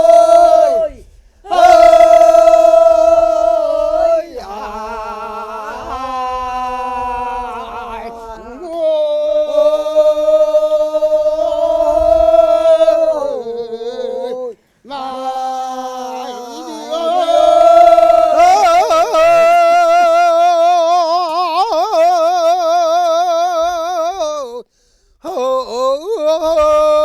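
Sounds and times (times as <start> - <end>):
person singing folk song: 0.0 - 27.0.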